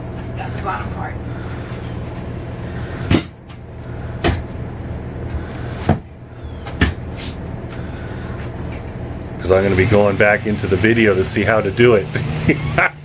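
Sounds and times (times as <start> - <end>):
steady low hum: 0.0 - 13.0
wooden knocks and clunks: 4.2 - 4.5, 5.8 - 7.0.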